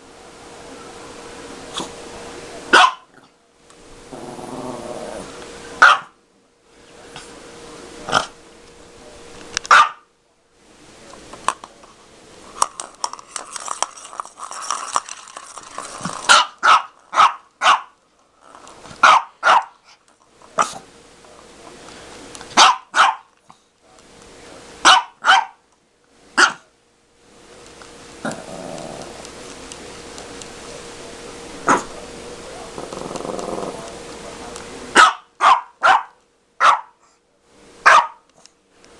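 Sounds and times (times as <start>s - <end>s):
dog barking: 2.7s - 3.1s, 5.8s - 6.2s, 9.7s - 10.1s, 16.3s - 18.0s, 19.0s - 19.8s, 22.6s - 23.3s, 24.8s - 25.6s, 26.4s - 26.6s, 31.7s - 31.9s, 35.0s - 37.0s, 37.8s - 38.2s
dog growling: 4.1s - 5.4s, 28.2s - 29.4s, 31.7s - 32.0s, 32.6s - 34.0s.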